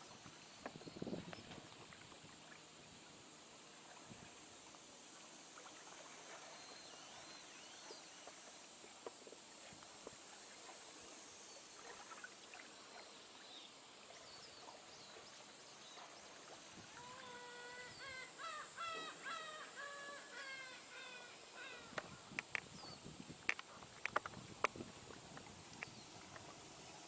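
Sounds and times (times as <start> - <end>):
sharp clicks: 21.9 - 22.7.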